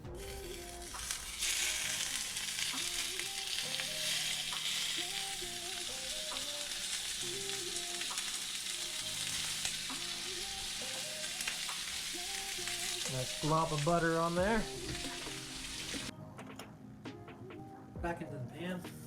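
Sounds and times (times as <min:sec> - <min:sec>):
soft background music: 0:00.0 - 0:19.0
seafood sizzling in oil: 0:00.1 - 0:16.1.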